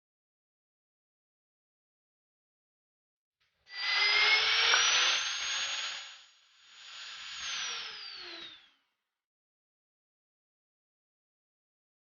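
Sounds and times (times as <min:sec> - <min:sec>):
magnetic drill motor whine: 0:03.7 - 0:08.8.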